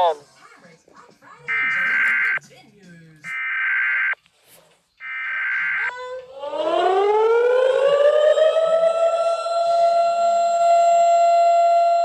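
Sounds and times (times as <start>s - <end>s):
siren winding up and wailing: 1.5s - 2.4s, 5.0s - 9.1s.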